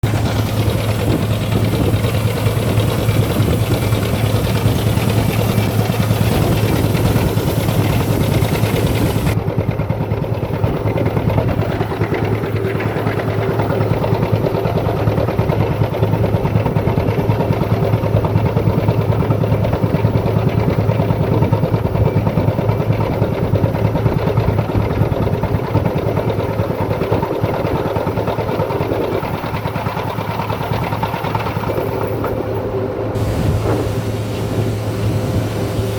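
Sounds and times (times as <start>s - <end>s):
diesel engine pulsing: 0.0s - 35.9s.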